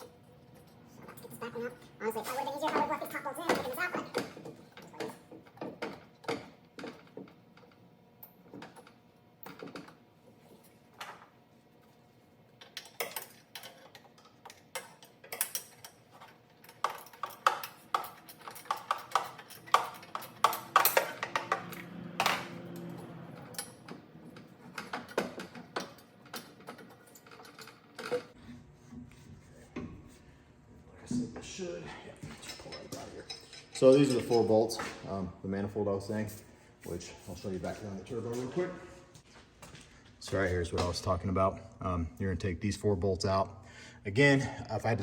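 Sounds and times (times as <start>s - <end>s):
hand tools clicking on metal: 12.6s - 21.9s.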